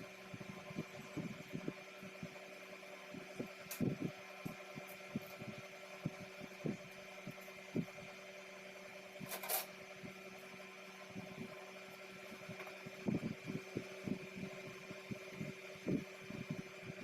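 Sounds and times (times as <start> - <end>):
steady electrical hum: 0.0 - 17.0.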